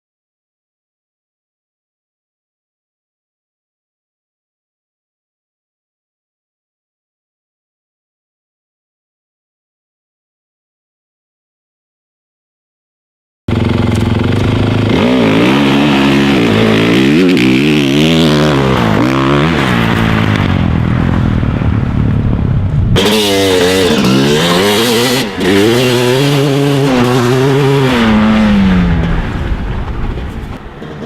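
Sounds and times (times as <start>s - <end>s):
dirt bike engines revving: 13.5s - 31.0s.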